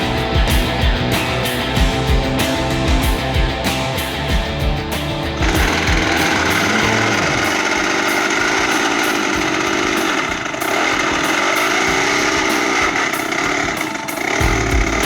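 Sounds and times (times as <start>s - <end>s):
chainsaw running at high revs: 4.3s - 15.0s.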